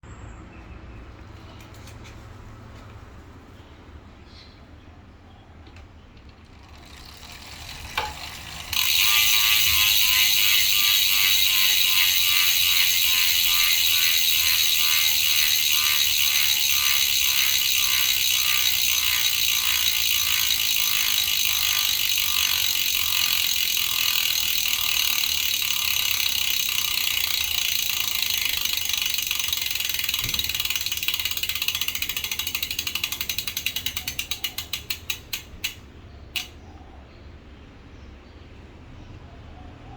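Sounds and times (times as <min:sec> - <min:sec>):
bicycle freehub ratcheting: 0:05.8 - 0:36.6.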